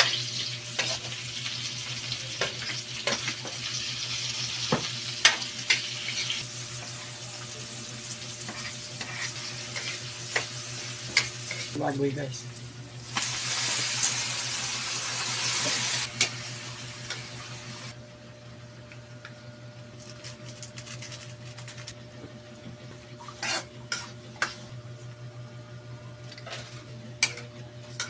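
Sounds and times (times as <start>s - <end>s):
meat sizzling in a pan: 0.0s - 11.8s, 13.0s - 17.9s
metal spatula scraping a pan: 8.5s - 10.1s, 23.2s - 24.7s.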